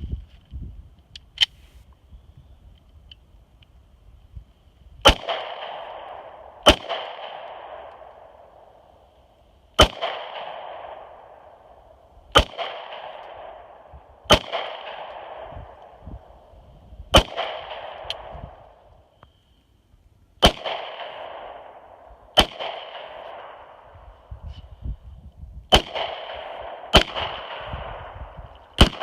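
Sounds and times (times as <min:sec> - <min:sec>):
pistol shots: 0:05.0 - 0:08.7, 0:09.8 - 0:16.0, 0:17.1 - 0:18.5, 0:20.4 - 0:23.9, 0:25.7 - 0:29.0.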